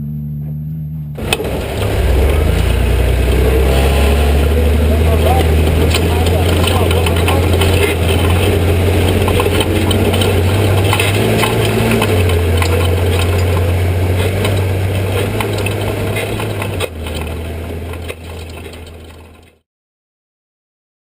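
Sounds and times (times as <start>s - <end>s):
race car engine idling: 0.0s - 19.6s
rattling clicks: 5.2s - 19.6s.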